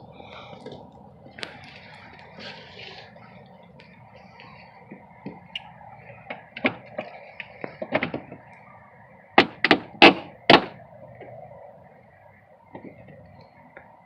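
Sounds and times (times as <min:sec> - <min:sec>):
sharp loud knocks: 0:09.4 - 0:10.8.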